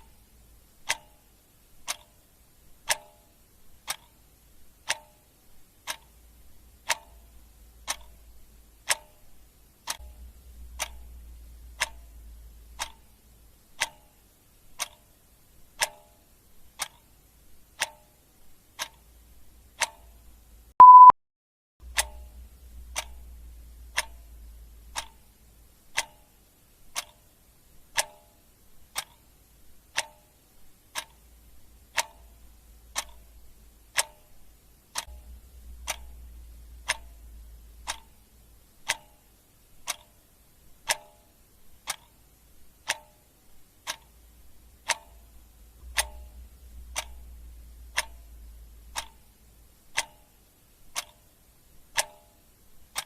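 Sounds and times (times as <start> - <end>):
clock ticking: 0.0 - 21.1, 21.8 - 53.0
short beep: 20.8 - 21.2.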